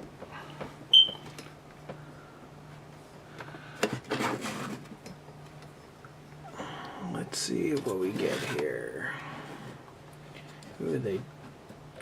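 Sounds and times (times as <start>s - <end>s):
steady low hum: 0.0s - 12.0s
smoke alarm chirp: 0.9s - 1.2s.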